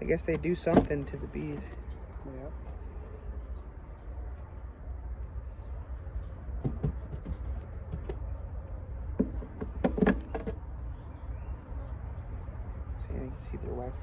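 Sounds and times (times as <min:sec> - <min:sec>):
wooden hive parts knocking: 0:00.0 - 0:02.0, 0:06.6 - 0:08.3, 0:09.1 - 0:10.6
steady low rumble: 0:00.0 - 0:14.0.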